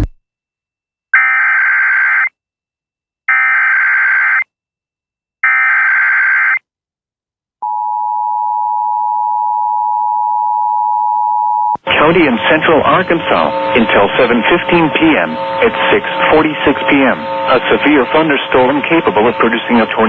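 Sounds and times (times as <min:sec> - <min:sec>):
digital data bursts: 0:11.9 - 0:20.0.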